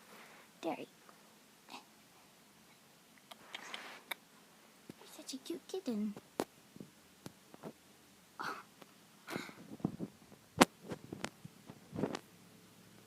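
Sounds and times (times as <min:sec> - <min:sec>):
soft breathy puffs: 0:00.0 - 0:00.6, 0:03.4 - 0:04.8.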